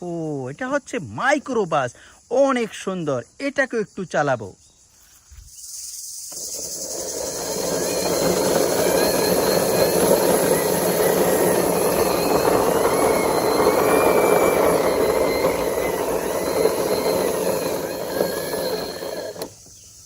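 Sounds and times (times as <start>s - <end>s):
toy bus motor whirring: 6.0s - 19.8s.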